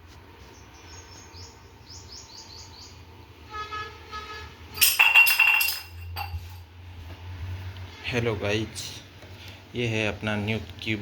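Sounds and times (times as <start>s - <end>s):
small bird chirping: 0.4s - 3.0s
horn tooting: 3.5s - 4.7s
bright ringing clatter: 4.8s - 6.6s.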